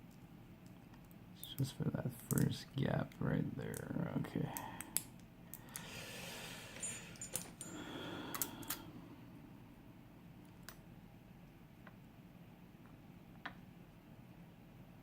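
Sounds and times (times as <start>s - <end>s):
high metal rings: 6.8s - 7.8s.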